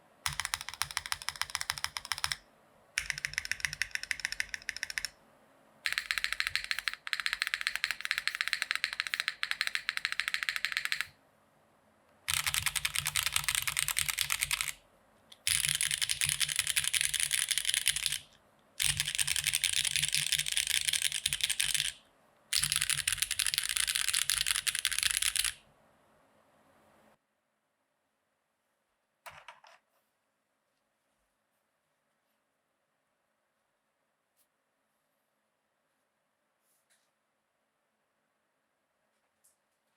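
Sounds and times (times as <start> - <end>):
mechanical keyboard typing: 0.3 - 2.4, 3.0 - 5.2, 5.8 - 11.2, 12.3 - 14.8, 15.4 - 25.6.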